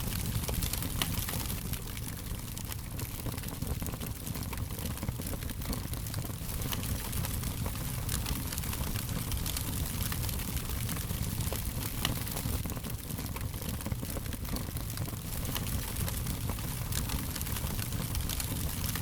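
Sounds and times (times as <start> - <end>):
fire crackling: 0.0 - 19.0.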